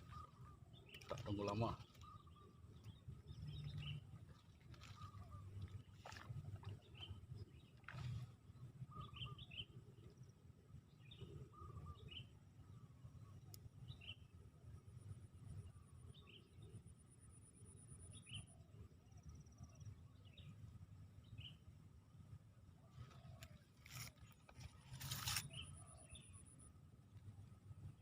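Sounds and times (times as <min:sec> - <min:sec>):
small birds chirping: 0:00.0 - 0:10.2.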